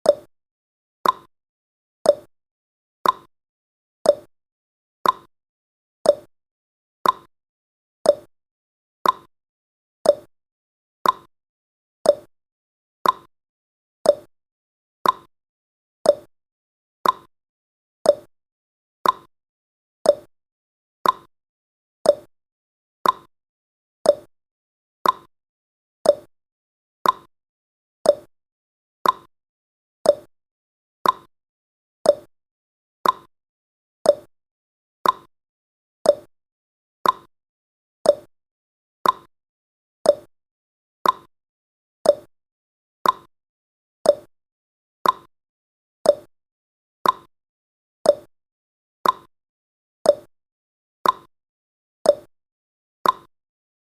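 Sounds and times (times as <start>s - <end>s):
clock ticking: 31.0s - 31.3s, 33.0s - 33.3s, 35.0s - 35.3s, 37.0s - 37.3s, 39.0s - 39.3s, 41.0s - 41.3s, 43.0s - 43.3s, 45.0s - 45.3s, 47.0s - 47.3s, 49.0s - 49.3s, 53.0s - 53.3s.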